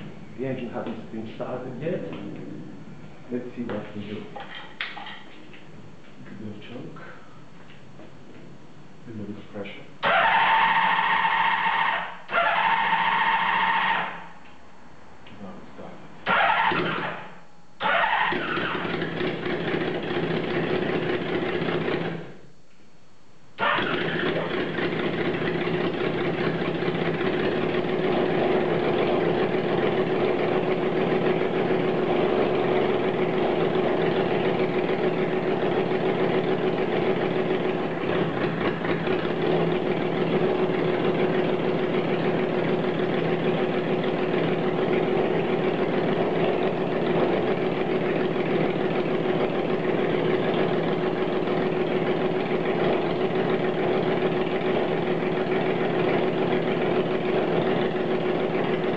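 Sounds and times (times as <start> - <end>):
engine idling: 16.2 - 22.3, 23.6 - 58.9.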